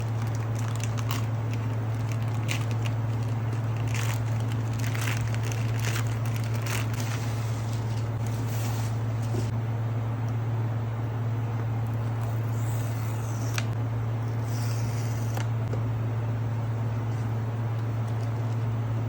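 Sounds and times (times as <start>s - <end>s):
plastic wrap and cardboard rustling: 0.0s - 9.4s
steady low hum: 0.0s - 19.0s.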